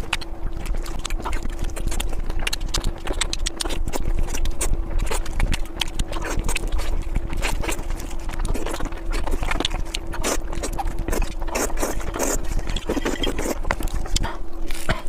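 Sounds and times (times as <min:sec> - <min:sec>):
faint steady hum: 0:00.0 - 0:15.0
food crunching: 0:00.0 - 0:15.0.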